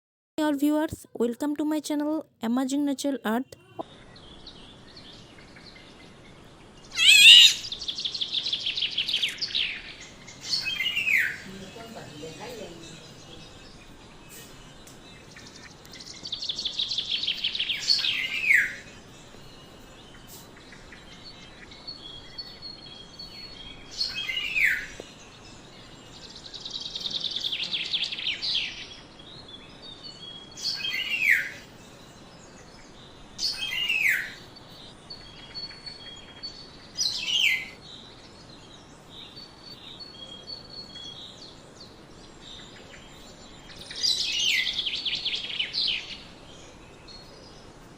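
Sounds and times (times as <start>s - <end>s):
oriole harsh rasping calls: 6.9s - 7.7s.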